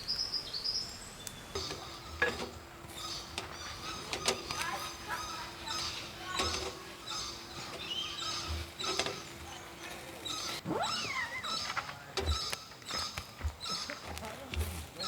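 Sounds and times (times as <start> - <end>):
animal chirping: 0.0 - 14.4
animal call sweeping upward: 10.6 - 11.8.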